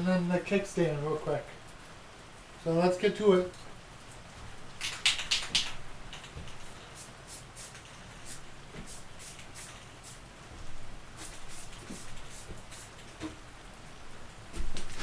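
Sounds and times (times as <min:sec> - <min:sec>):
aerosol spray can hissing: 0:07.0 - 0:10.2, 0:11.2 - 0:13.0.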